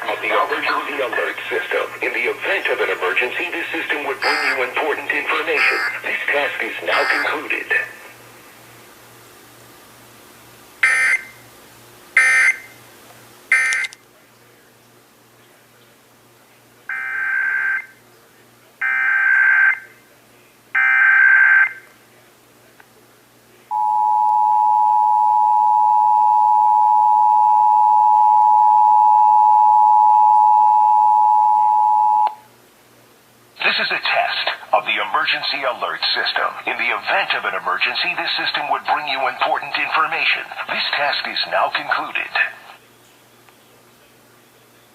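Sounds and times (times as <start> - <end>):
two-tone attention signal: 4.2 - 4.6, 5.6 - 6.0, 10.8 - 11.4, 13.5 - 13.8, 23.7 - 32.4
data bursts: 4.2 - 4.8, 5.5 - 6.0, 6.9 - 7.4, 10.8 - 11.4, 13.5 - 13.9.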